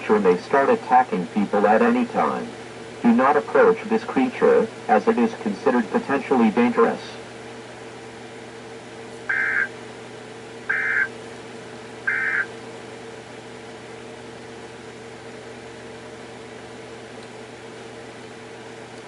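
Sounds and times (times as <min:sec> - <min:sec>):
steady low hum: 0:00.0 - 0:19.0
buzzy two-tone digital chirps: 0:09.3 - 0:09.7, 0:10.7 - 0:11.1, 0:12.1 - 0:12.5.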